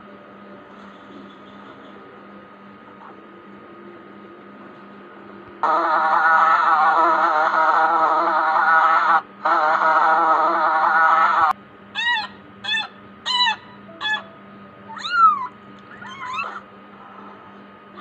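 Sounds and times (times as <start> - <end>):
animal high cries: 5.6 - 14.3, 14.9 - 16.7
loud buzzing animal sound: 5.6 - 17.2.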